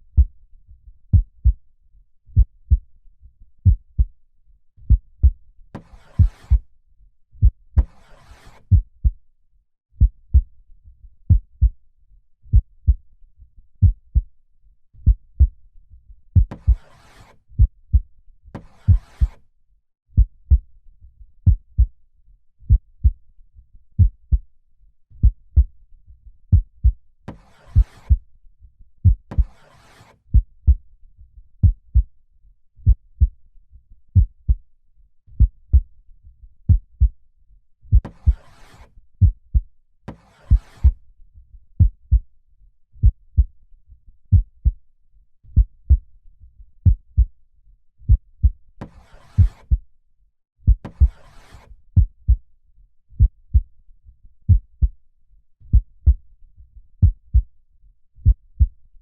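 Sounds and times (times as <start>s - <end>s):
heartbeat thumping: 2.4s - 2.8s, 4.9s - 5.3s, 16.4s - 16.8s, 20.2s - 20.6s, 22.7s - 23.2s, 37.9s - 38.4s, 41.8s - 42.2s, 44.3s - 44.7s, 45.6s - 46.0s, 49.4s - 49.8s, 50.7s - 51.2s, 53.2s - 53.7s, 54.5s - 54.9s, 55.7s - 56.2s, 57.0s - 57.5s, 58.2s - 58.7s.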